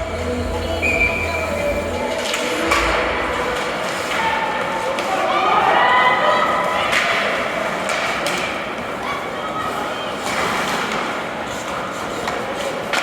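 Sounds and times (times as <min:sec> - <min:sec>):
crowd noise hum: 0:00.0 - 0:13.0
hockey sticks and puck knocking: 0:06.9 - 0:08.8, 0:12.2 - 0:13.0.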